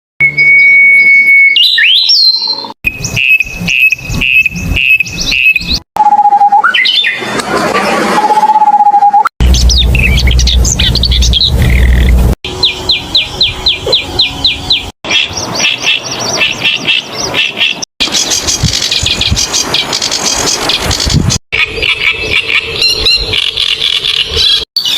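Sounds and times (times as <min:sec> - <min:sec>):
songbirds singing: 0:01.6 - 0:05.8, 0:09.4 - 0:24.9
low rumble: 0:09.4 - 0:12.4.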